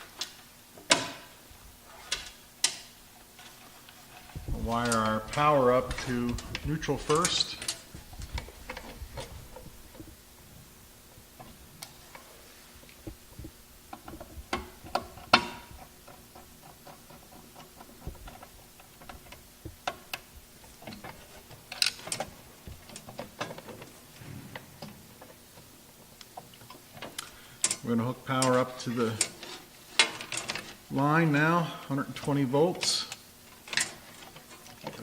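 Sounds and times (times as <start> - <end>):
hand tools clicking and tapping: 13.0 - 20.3.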